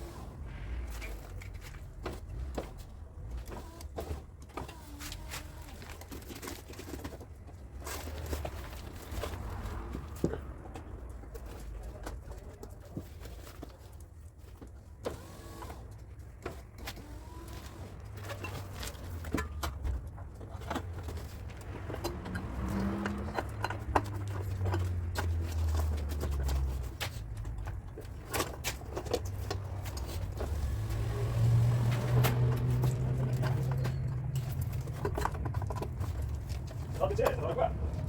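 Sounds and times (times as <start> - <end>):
low motor hum: 17.1 - 38.0.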